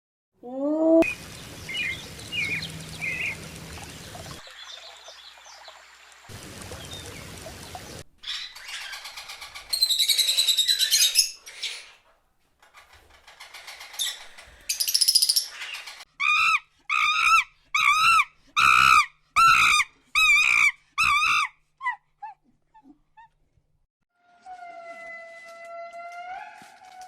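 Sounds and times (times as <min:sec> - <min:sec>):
animal chirping and squeaking: 0:08.2 - 0:12.0, 0:12.8 - 0:21.5.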